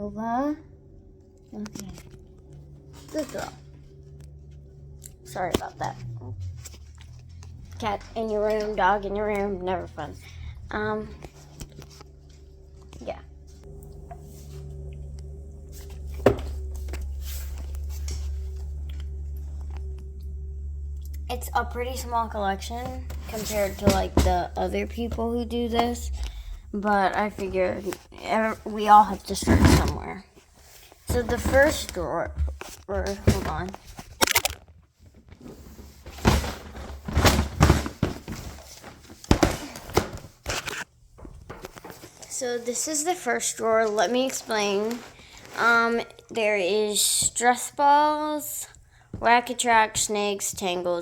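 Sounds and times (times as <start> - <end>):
steady low hum: 0.0 - 51.0
soft rustling handling noises: 22.9 - 48.0.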